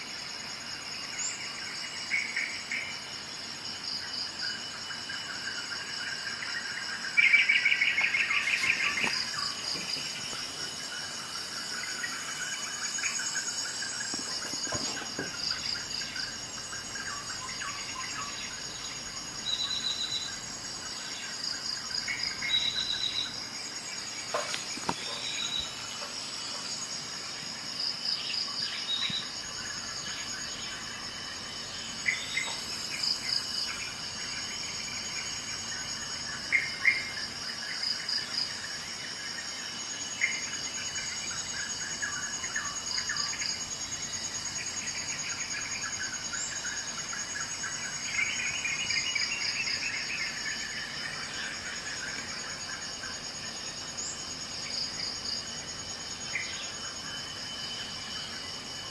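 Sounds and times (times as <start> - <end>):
high-pitched insect chirring: 4.5 - 27.4.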